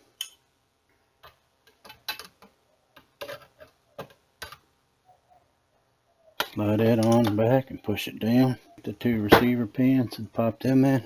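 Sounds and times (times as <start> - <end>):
gun parts clicking and knocking: 6.4 - 7.4.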